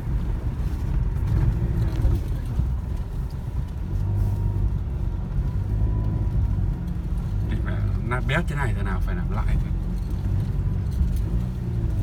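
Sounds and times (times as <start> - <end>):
engine hum: 0.0 - 12.0.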